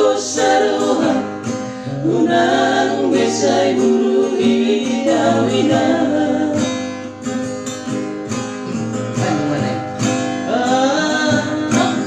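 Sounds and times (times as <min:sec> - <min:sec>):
acoustic guitar melody: 0:00.0 - 0:12.0
person singing: 0:01.9 - 0:06.8, 0:08.6 - 0:12.0.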